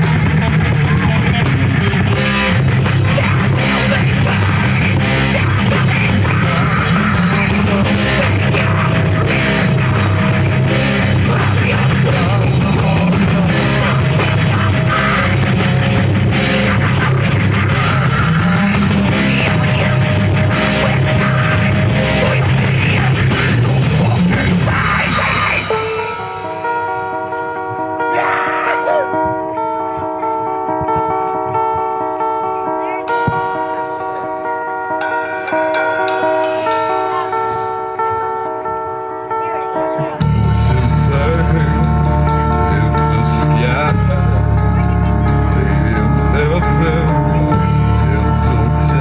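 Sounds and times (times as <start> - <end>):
live heavy metal band: 0.0 - 38.0, 40.0 - 49.0
electric guitar: 0.0 - 49.0.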